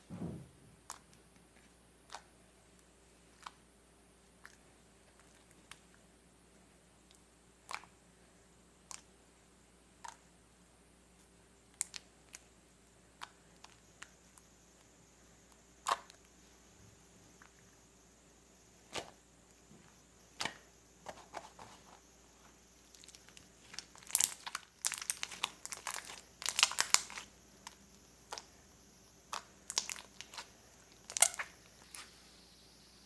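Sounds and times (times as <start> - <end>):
crinkling and crackling: 19.8 - 28.5, 29.3 - 32.2.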